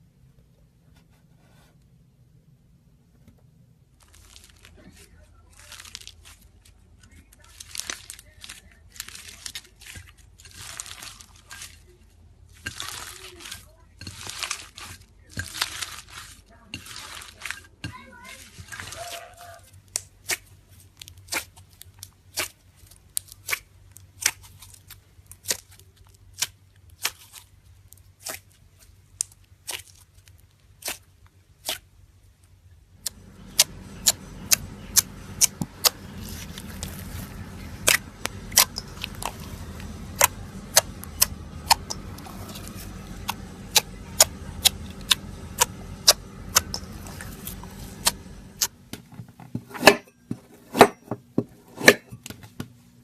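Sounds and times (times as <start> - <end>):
low rumbling noise: 32.9 - 49.1.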